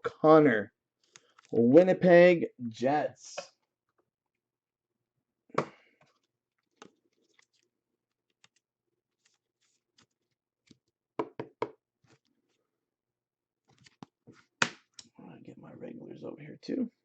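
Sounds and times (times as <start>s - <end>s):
cards tapping on table: 11.2s - 11.8s.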